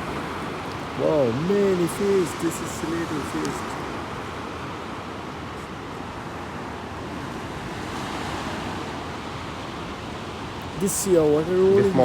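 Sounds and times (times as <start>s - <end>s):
sea surf washing onto beach: 0.0s - 12.0s.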